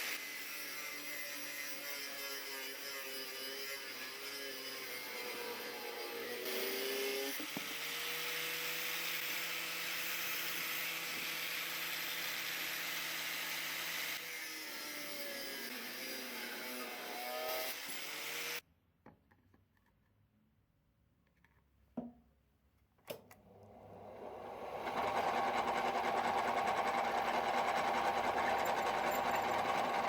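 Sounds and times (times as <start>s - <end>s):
electric power tool grinding: 2.2s - 18.6s, 23.6s - 30.0s.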